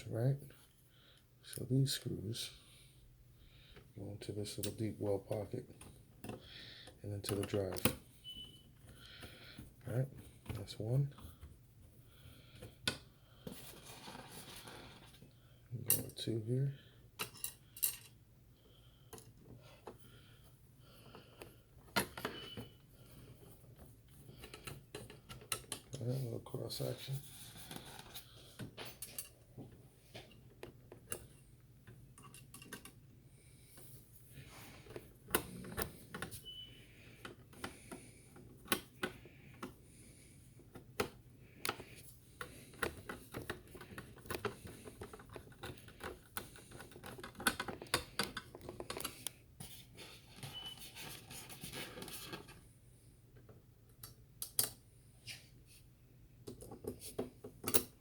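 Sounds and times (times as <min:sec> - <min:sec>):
light clicks and scrapes of hardware: 0:40.7 - 0:52.6.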